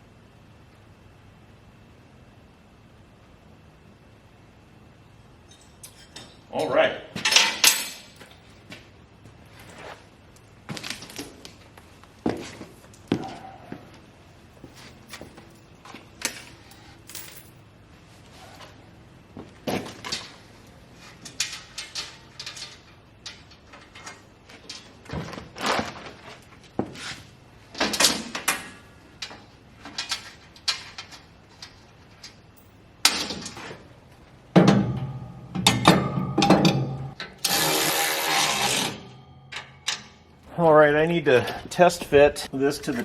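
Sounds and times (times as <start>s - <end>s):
parts and tools clunking: 5.4s - 8.9s, 14.6s - 17.7s, 18.6s - 27.0s, 27.7s - 37.6s, 38.4s - 40.5s
loud scraping: 37.4s - 39.2s.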